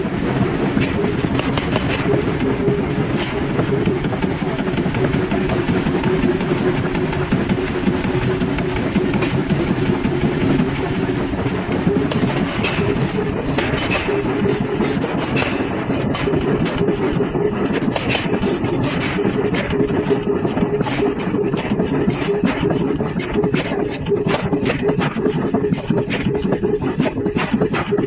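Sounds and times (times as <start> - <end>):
machinery humming: 0.0 - 28.0
metal clicks and clanks: 8.0 - 9.6, 11.7 - 28.0.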